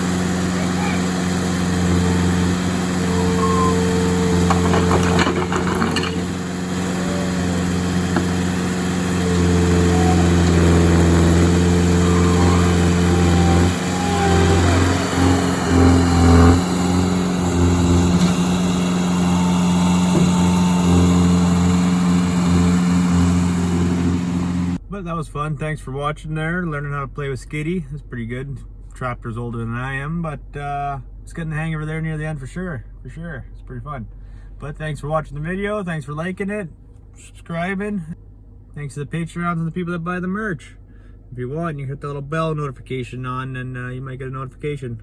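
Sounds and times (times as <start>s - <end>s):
skid-steer loader engine running: 0.0s - 24.8s
knocks: 4.4s - 6.4s.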